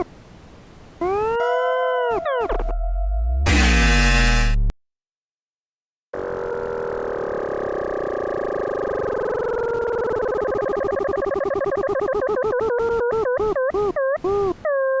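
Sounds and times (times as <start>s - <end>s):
computer-generated tones: 1.0s - 4.7s, 6.2s - 14.6s
pulsing warble: 6.2s - 13.7s.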